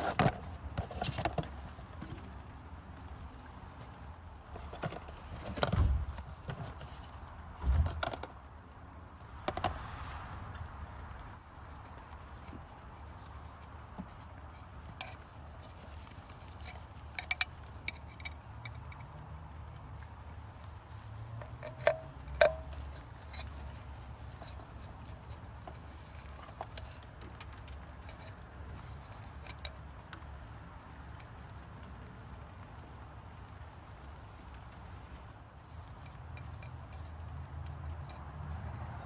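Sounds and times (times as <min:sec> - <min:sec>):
tools and parts clicking: 0:04.5 - 0:07.2, 0:14.8 - 0:19.1, 0:20.0 - 0:27.4, 0:28.0 - 0:30.2, 0:35.7 - 0:39.0.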